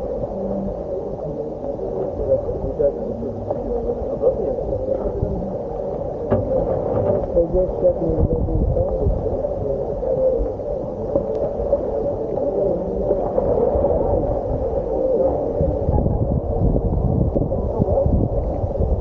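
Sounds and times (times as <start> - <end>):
boat engine droning: 0.0 - 19.0.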